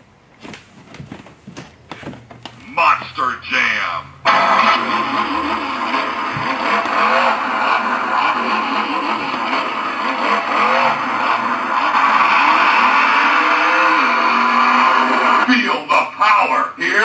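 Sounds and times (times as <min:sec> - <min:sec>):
recorded truck engine revving: 0:02.9 - 0:15.6.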